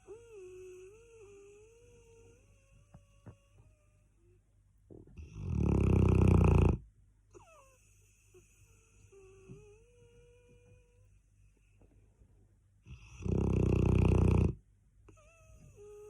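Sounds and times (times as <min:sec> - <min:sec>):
dog snoring: 0:05.2 - 0:07.7, 0:12.9 - 0:16.0.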